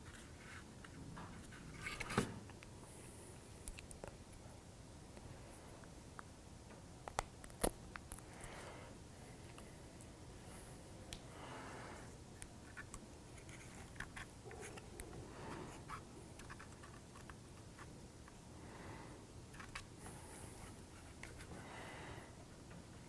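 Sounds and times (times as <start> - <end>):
soft breaths: 2.7 - 3.7, 5.2 - 6.0, 8.2 - 12.8, 13.4 - 23.0.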